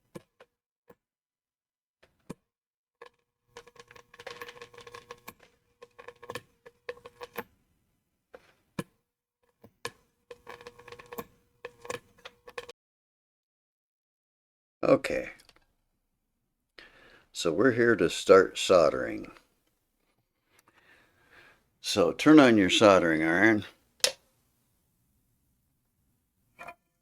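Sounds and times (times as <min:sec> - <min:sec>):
small hard objects clicking: 0:03.0 - 0:07.4.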